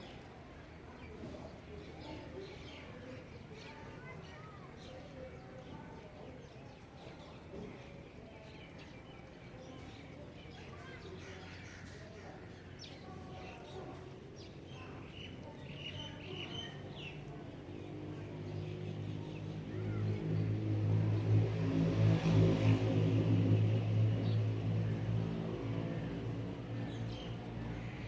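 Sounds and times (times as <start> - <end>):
vehicle engine passing by: 18.0 - 27.8.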